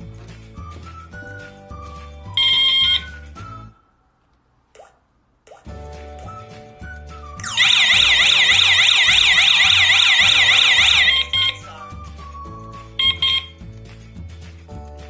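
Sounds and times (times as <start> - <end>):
background music: 0.0 - 4.1, 4.8 - 15.0
short alarm chirps: 2.4 - 3.1, 7.4 - 11.6, 13.0 - 13.5
warbling alarm siren: 7.4 - 11.6.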